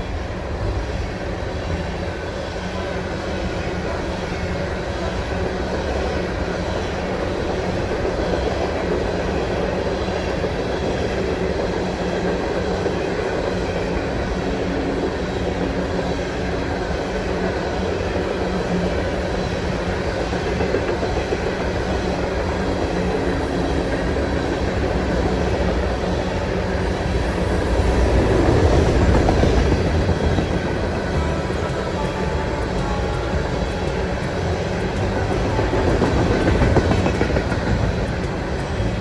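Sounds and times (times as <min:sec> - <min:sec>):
train wheels on rails: 0:00.0 - 0:39.0.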